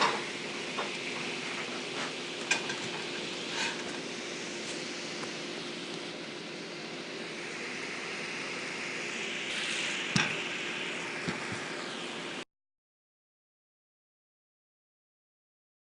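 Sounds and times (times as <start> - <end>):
hiss: 0.0 - 12.4
low hum: 0.0 - 12.4.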